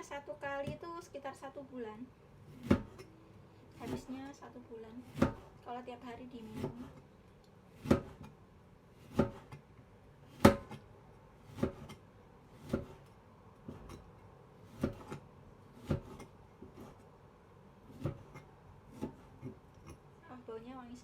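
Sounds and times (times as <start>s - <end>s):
knife slicing a lemon: 5.0s - 5.6s, 6.5s - 7.0s, 7.8s - 8.4s, 9.0s - 9.6s, 10.3s - 10.8s, 11.5s - 14.1s, 14.7s - 17.1s, 17.9s - 20.1s.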